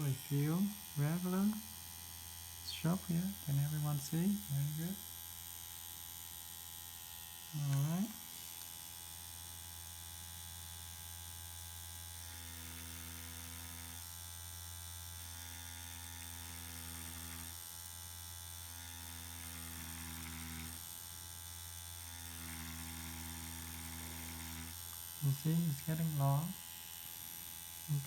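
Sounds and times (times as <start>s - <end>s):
makeup machine electric hum: 0.0s - 28.0s.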